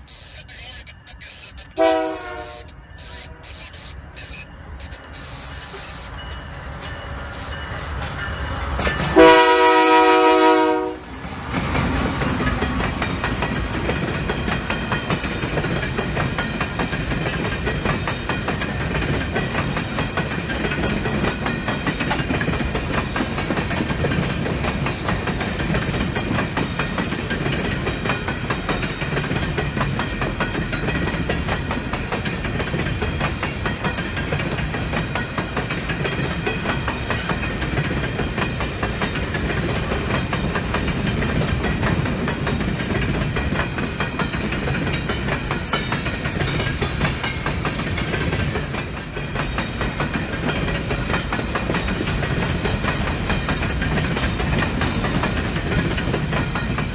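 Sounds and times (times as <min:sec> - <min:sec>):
railcars rumbling and rattling: 0:00.0 - 0:56.9
train horn blast: 0:01.7 - 0:03.4, 0:09.2 - 0:11.2.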